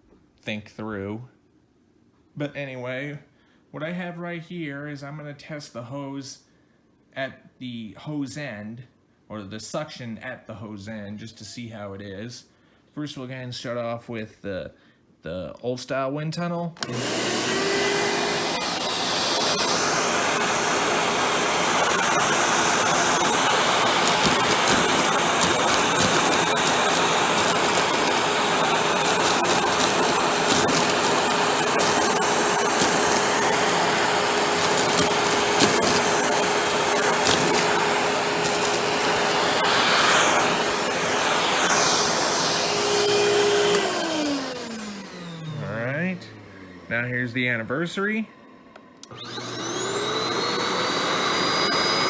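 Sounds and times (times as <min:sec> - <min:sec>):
vacuum cleaner running: 0:16.8 - 0:47.1, 0:49.0 - 0:52.0
air rushing through hose: 0:19.2 - 0:43.0.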